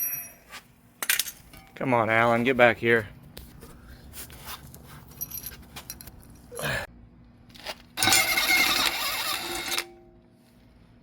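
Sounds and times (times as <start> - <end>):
metal tools clinking: 5.1 - 6.5.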